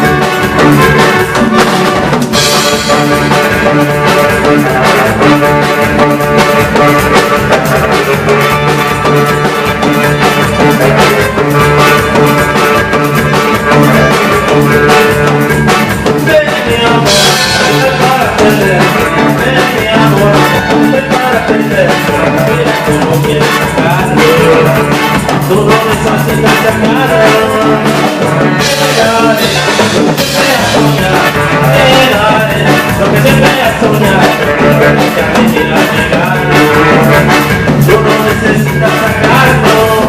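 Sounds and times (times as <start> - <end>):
instrumental band music: 0.0 - 40.0.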